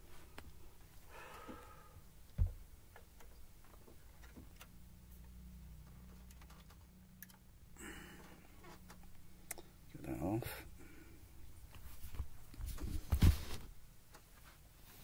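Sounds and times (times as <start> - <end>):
hands handling record sleeve: 11.7 - 15.0.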